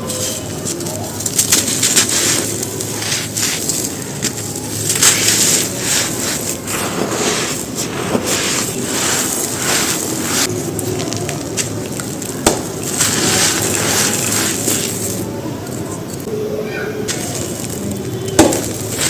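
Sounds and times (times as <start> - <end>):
crumbly cylinders being crushed: 0.0 - 16.3, 17.1 - 19.0
sharp crack: 1.2 - 15.2, 17.1 - 19.0.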